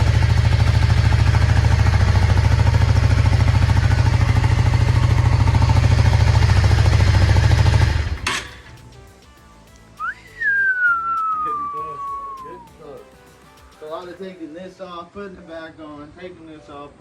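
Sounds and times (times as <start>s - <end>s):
motorcycle engine running: 0.0s - 8.8s.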